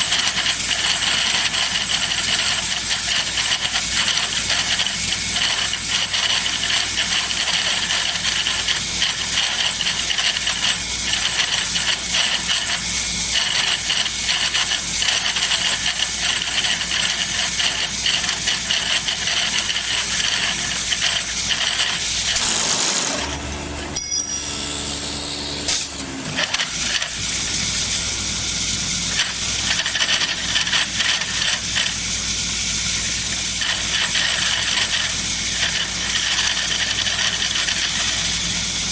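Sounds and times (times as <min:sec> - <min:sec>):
hissing rattle of wood machining: 0:00.0 - 0:23.4, 0:24.6 - 0:38.9
motor hum: 0:18.2 - 0:32.0.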